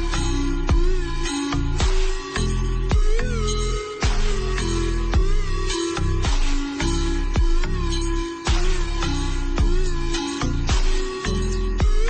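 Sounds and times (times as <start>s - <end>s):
electronic music with heavy beat: 0.0s - 12.0s.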